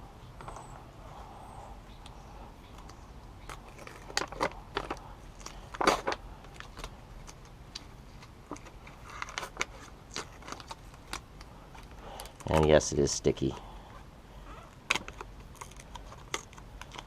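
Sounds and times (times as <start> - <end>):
foil sheet crackling and rustling: 8.1 - 11.3.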